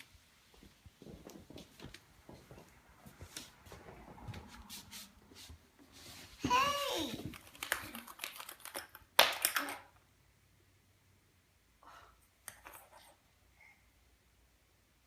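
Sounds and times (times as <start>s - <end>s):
small hard objects clicking: 7.3s - 9.9s.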